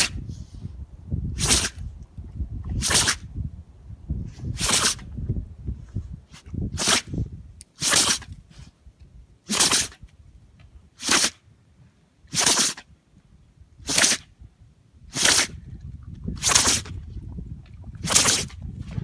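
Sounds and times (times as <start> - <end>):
dog sneezing: 1.4 - 1.8, 2.8 - 3.2, 4.6 - 5.0, 7.8 - 8.2, 9.5 - 9.9, 11.0 - 11.3, 12.3 - 12.8, 13.9 - 14.2.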